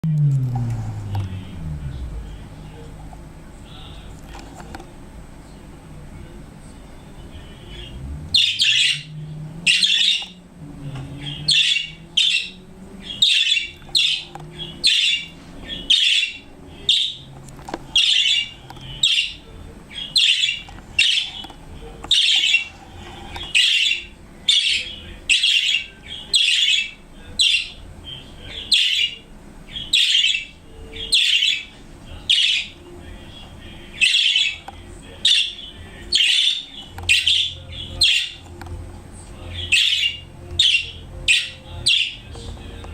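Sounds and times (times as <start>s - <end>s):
budgerigars calling: 8.3s - 10.4s, 11.2s - 17.3s, 18.0s - 21.4s, 22.1s - 31.7s, 32.3s - 32.8s, 33.9s - 34.6s, 35.2s - 38.4s, 39.5s - 42.5s.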